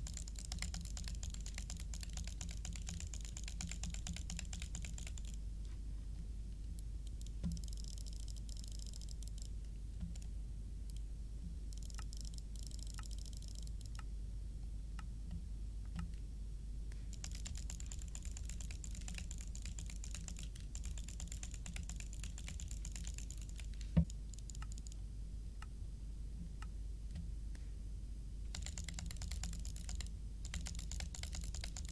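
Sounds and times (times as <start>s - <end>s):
fast runs of small clicks: 0.0s - 5.8s, 6.6s - 11.1s, 11.7s - 14.1s, 17.0s - 25.0s, 28.5s - 31.9s
low steady hum: 0.0s - 31.9s.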